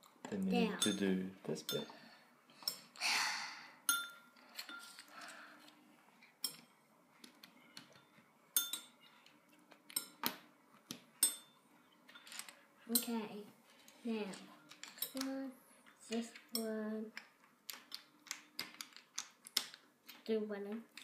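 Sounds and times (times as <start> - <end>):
plastic toy bricks clicking: 16.1 - 20.3.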